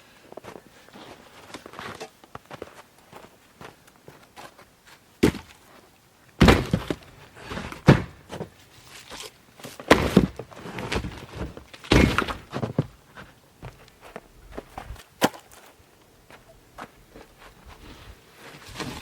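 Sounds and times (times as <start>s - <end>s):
footsteps: 0.3s - 19.0s
firewood dropped onto stack: 6.4s - 8.5s, 9.1s - 12.9s.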